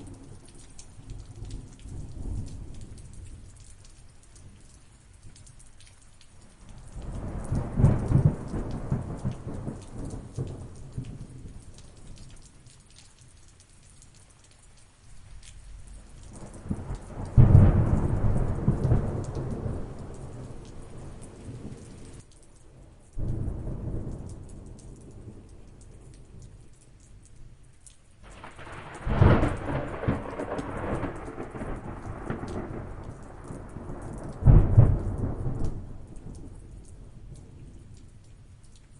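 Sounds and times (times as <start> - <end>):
rain pattering: 0.0 - 38.9
thunder rolling: 7.1 - 10.7, 16.4 - 22.2, 28.3 - 36.6.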